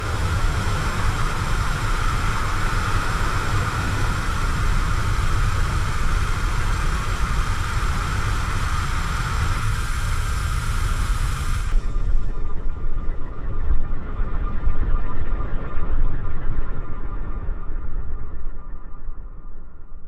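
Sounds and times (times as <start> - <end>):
constant hiss: 0.0 - 12.4.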